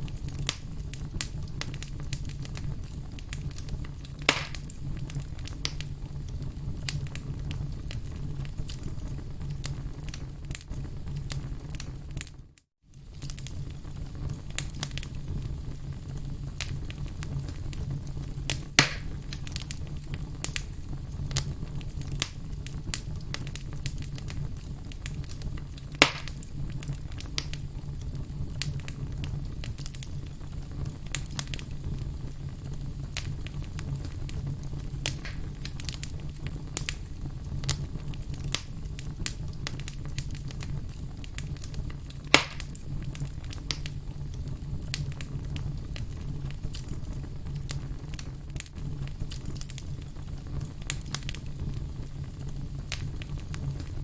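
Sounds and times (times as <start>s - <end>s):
firewood crackling: 0.0s - 54.0s
loud fire pops: 0.0s - 54.0s
low steady rumble: 13.0s - 54.0s.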